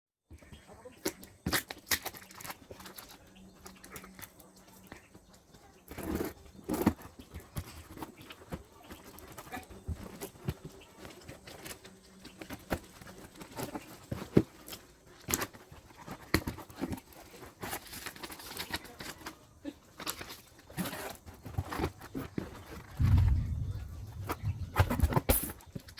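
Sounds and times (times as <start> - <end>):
packaging crinkling and rustling: 5.9 - 25.9.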